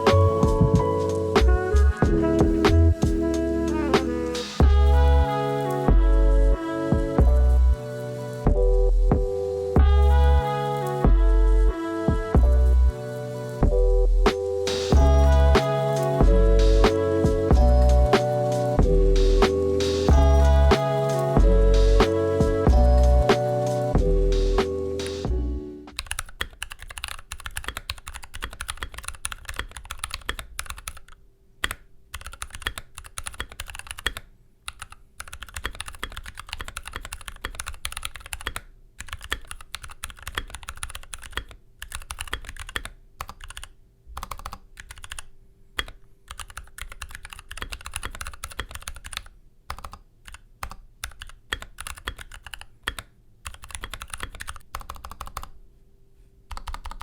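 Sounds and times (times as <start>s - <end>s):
mechanical keyboard keystroke clacks: 25.9s - 55.5s, 56.5s - 57.0s.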